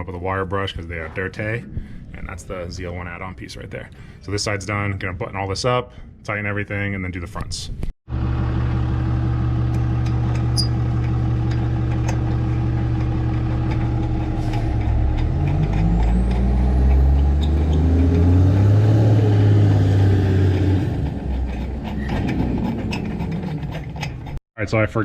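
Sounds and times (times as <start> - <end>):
engine running: 8.1 - 24.4.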